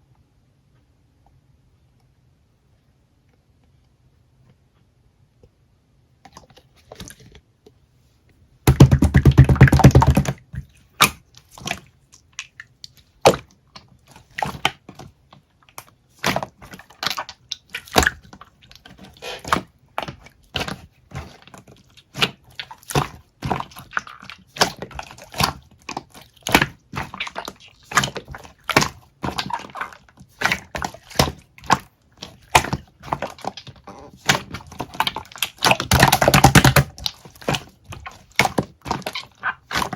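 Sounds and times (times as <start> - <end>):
slime squishing and popping: 8.7 - 15.1, 15.7 - 39.9.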